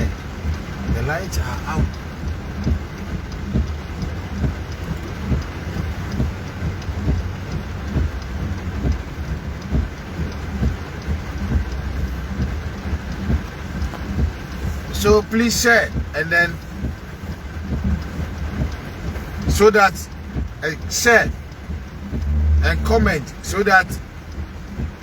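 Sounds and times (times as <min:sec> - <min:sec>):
rain falling: 0:00.0 - 0:25.0
low rumble: 0:20.1 - 0:24.0.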